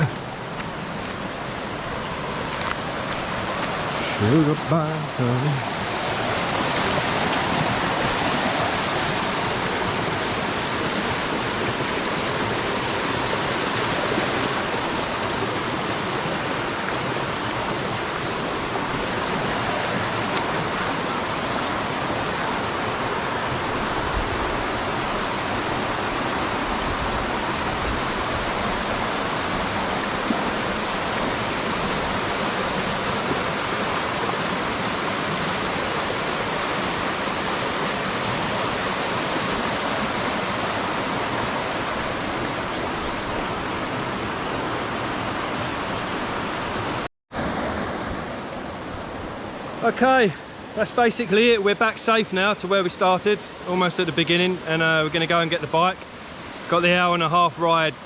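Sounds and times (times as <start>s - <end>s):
waterfall roaring over rocks: 0.0s - 58.0s.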